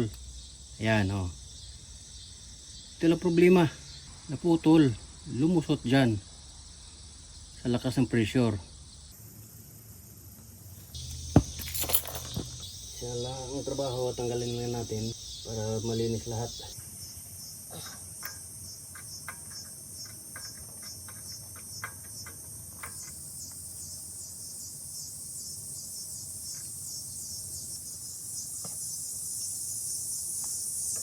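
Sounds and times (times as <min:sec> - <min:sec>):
insects chirping: 0:00.0 - 0:31.0
clicks of pump parts handled: 0:11.0 - 0:12.6.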